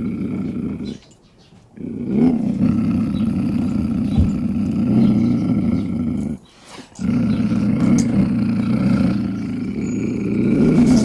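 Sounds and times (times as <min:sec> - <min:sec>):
lion growling: 0:00.0 - 0:01.0, 0:01.8 - 0:06.4, 0:07.0 - 0:11.0.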